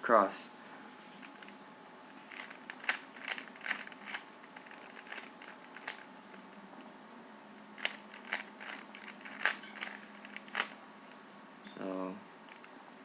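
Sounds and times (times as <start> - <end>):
puzzle cube clicking and rattling: 1.2 - 1.6, 2.2 - 6.5, 7.8 - 10.8.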